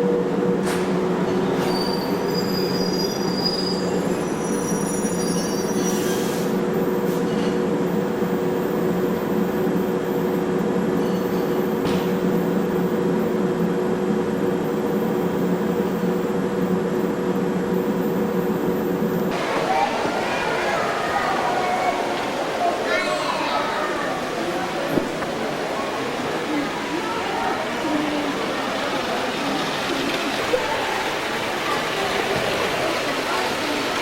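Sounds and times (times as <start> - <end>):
train humming: 0.0 - 34.0
high wheel squeals: 1.6 - 6.6.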